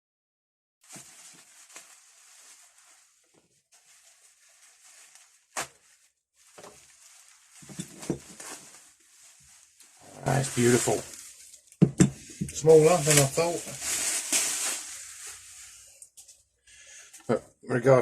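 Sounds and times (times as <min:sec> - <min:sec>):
packaging rustling: 0:00.8 - 0:16.4.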